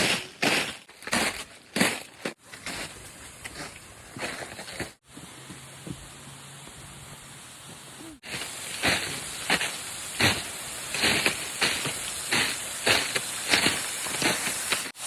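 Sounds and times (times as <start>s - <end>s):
footsteps crunching on snow: 0.0s - 6.1s, 8.2s - 15.0s
waterfall hiss: 5.0s - 15.0s.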